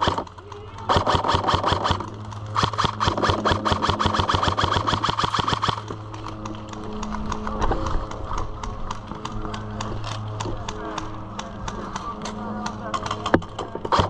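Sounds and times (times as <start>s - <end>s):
airsoft gun firing: 0.0s - 6.0s
airsoft gun clicks: 0.0s - 14.0s.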